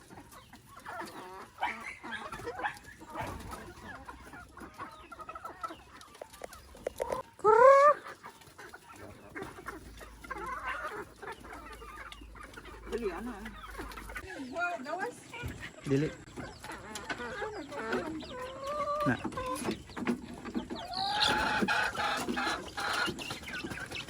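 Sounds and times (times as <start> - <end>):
chickens clucking: 0.0 - 24.0
loud rising chicken call: 7.0 - 8.0.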